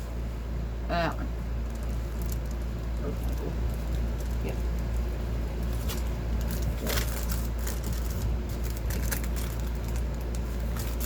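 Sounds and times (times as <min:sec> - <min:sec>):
steady low hum: 0:00.0 - 0:11.0
packaging rustling and clicking: 0:05.6 - 0:11.0.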